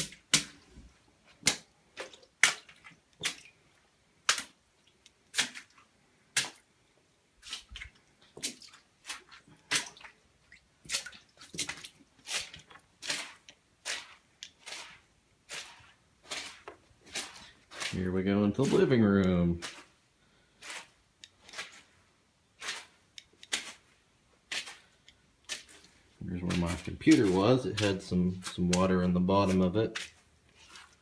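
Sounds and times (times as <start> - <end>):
footsteps splashing in water: 1.4 - 3.6, 5.3 - 6.6, 7.4 - 18.0, 25.5 - 31.0.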